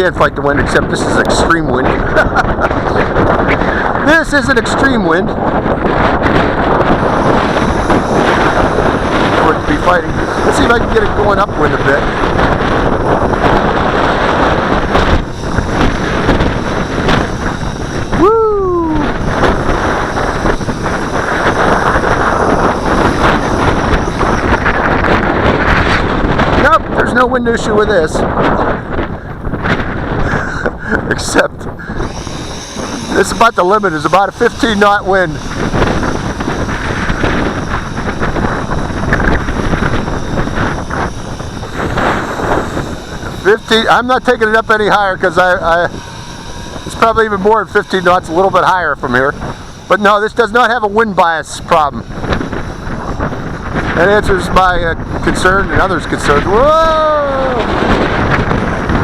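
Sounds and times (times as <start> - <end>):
strong wind on microphone: 0.0 - 59.0
rising and falling call: 18.0 - 19.3.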